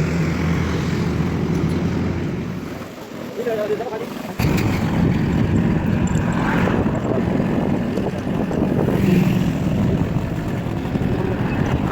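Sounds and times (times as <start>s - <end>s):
engine low rumble: 4.4s - 11.9s.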